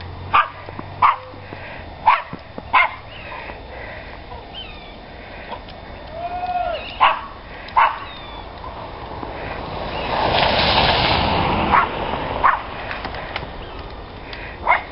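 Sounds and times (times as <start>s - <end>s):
dog barking: 0.3s - 3.6s, 7.0s - 8.8s, 11.7s - 12.7s, 14.6s - 14.9s
rising and falling call: 2.7s - 8.9s.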